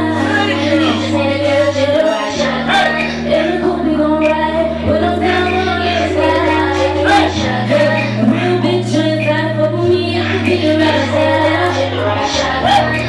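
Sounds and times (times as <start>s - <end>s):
instrumental music with bass: 0.0s - 13.0s
woman singing: 0.0s - 13.0s.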